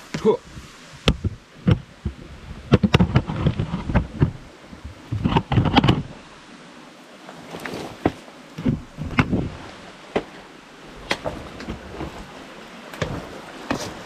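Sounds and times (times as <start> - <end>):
boots stepping on stony trail: 7.2 - 9.4, 11.1 - 14.0.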